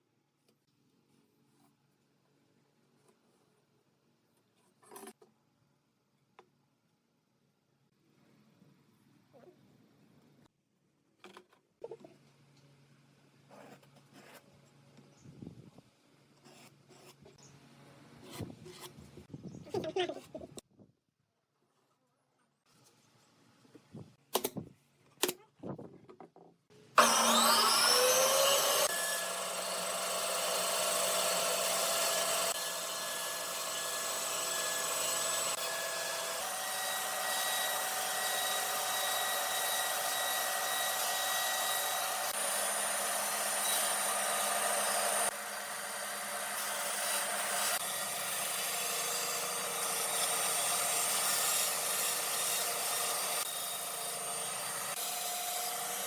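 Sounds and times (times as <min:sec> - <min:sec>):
power tool whining on wood: 0:27.0 - 0:56.0.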